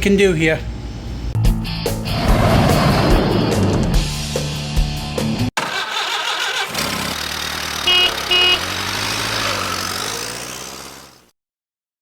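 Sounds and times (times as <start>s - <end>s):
vehicle engine running: 5.6s - 11.3s
car horn honks: 7.7s - 8.9s.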